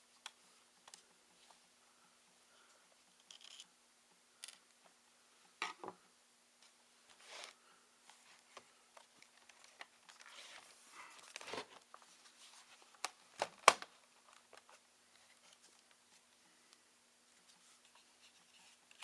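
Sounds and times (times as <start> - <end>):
laptop parts clicking and rustling: 3.2 - 3.7, 7.2 - 12.1, 12.8 - 16.0
small tools being handled: 3.2 - 3.7.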